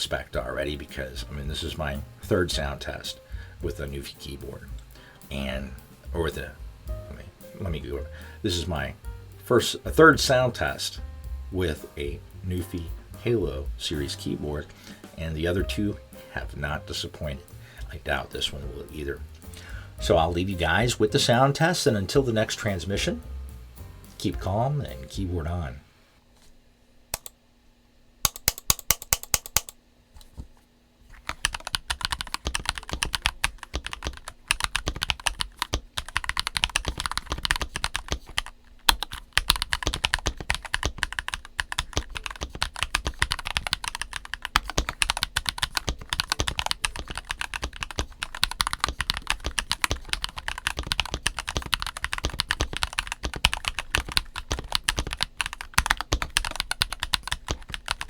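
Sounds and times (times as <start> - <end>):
mechanical keyboard typing: 28.3 - 29.8, 31.2 - 58.0.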